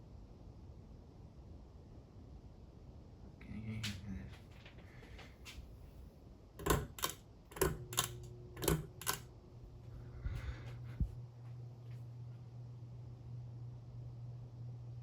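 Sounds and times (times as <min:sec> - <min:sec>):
fan motor low hum: 0:03.2 - 0:15.0
fan switch clicks: 0:06.6 - 0:09.4.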